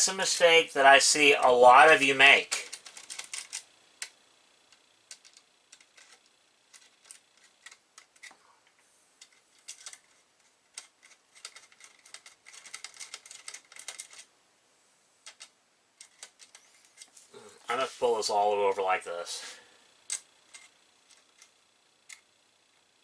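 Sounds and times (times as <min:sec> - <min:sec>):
clicks of small computer parts: 0:02.5 - 0:08.4, 0:09.2 - 0:14.3, 0:15.2 - 0:17.2, 0:20.1 - 0:22.3.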